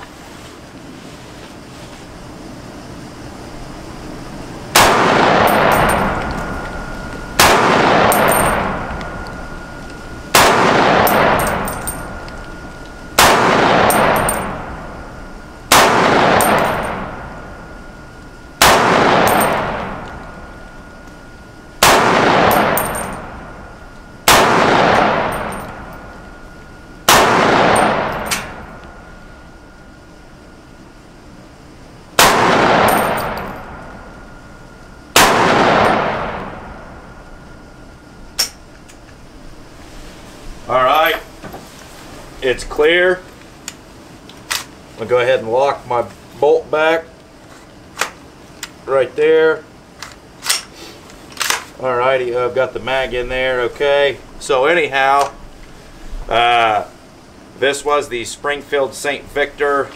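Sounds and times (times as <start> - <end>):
rifle shots with echo: 4.7 - 12.6, 13.2 - 15.0, 15.7 - 17.6, 18.6 - 20.8, 21.8 - 26.2, 27.0 - 29.2, 32.2 - 34.3, 35.1 - 37.3.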